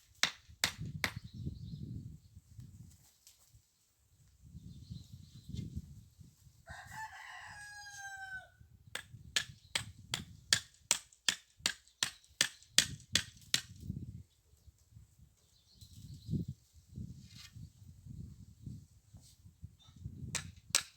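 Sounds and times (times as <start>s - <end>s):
rooster crowing: 6.7s - 8.6s.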